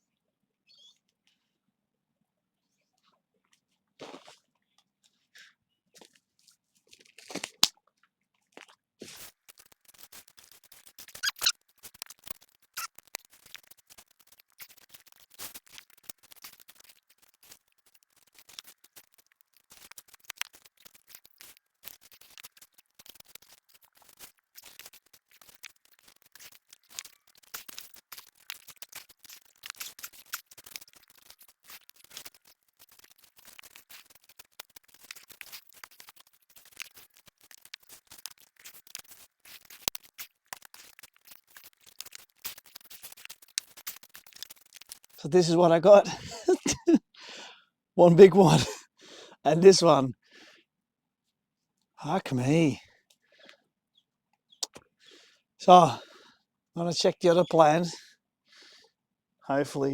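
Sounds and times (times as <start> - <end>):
soil and roots crackling: 6.8 - 47.0, 48.0 - 48.8, 49.5 - 50.1, 55.6 - 56.1, 56.8 - 58.0.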